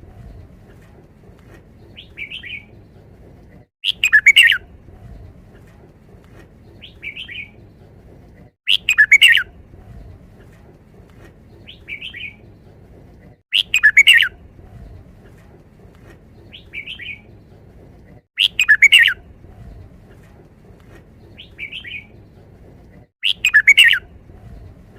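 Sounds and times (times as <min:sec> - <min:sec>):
bird song phrases: 0:01.8 - 0:02.9, 0:03.8 - 0:04.6, 0:06.6 - 0:07.7, 0:08.7 - 0:10.1, 0:11.5 - 0:12.6, 0:13.5 - 0:14.9, 0:16.3 - 0:17.5, 0:18.4 - 0:19.8, 0:21.2 - 0:22.4, 0:23.2 - 0:24.9.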